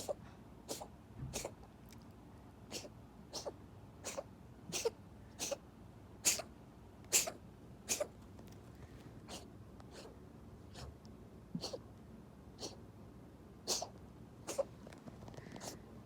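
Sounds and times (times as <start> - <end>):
kitten reverse sneezing: 0.0 - 1.6, 2.7 - 5.6, 6.2 - 6.5, 7.1 - 8.1, 9.2 - 11.0, 11.6 - 11.8, 12.6 - 12.8, 13.6 - 14.7.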